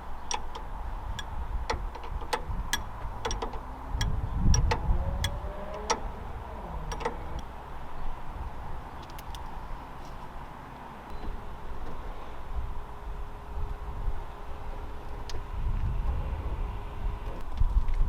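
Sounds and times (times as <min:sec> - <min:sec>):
metallic clicks and clinks: 0:00.2 - 0:06.1.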